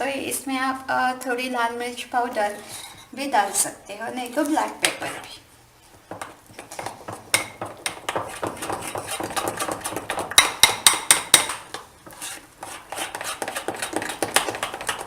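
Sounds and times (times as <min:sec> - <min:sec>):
batter stirred in a bowl: 0:04.3 - 0:15.0.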